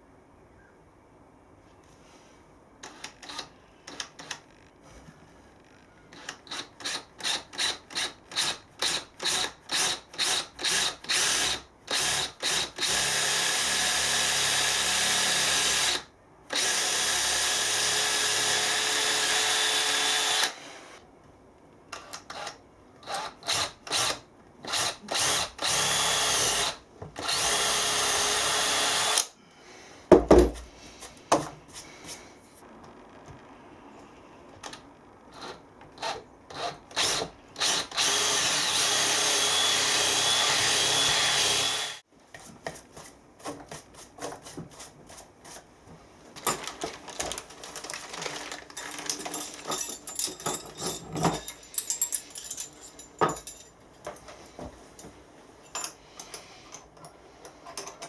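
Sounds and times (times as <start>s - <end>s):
power drill driving screws: 6.2s - 21.0s, 22.3s - 29.3s, 35.4s - 42.0s.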